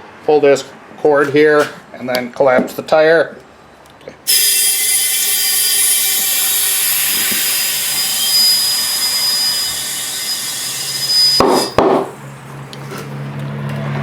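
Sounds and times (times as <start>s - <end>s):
compressed air hissing into tire: 4.3s - 12.4s
tire bead seating burst: 4.3s - 12.9s.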